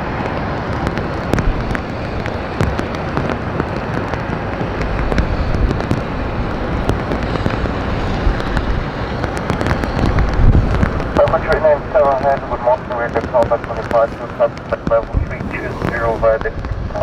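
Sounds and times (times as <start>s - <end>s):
rain drops on microphone: 0.0s - 17.0s
steady low rumble: 10.0s - 17.0s.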